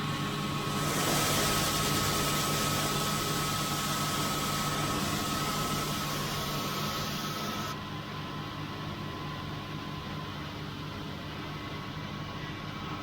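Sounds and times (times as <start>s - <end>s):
machinery engine droning: 0.0s - 7.7s
high whine: 0.6s - 7.8s
loud hiss: 0.7s - 7.7s.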